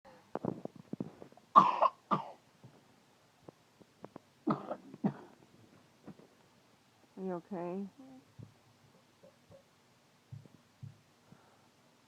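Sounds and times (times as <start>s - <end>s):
girl wet coughing: 1.6s - 2.4s, 4.5s - 5.3s.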